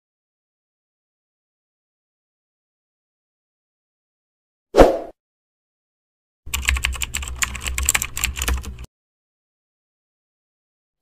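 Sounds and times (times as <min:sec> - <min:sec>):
rapid clatter of clicks: 0:06.5 - 0:08.9.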